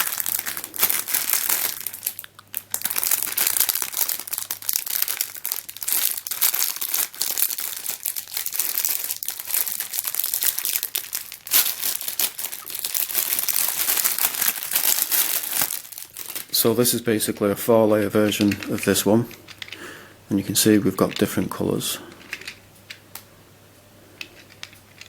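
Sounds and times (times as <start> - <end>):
packaging crinkling and rustling: 0.0 - 19.8, 20.8 - 23.0, 24.2 - 25.0.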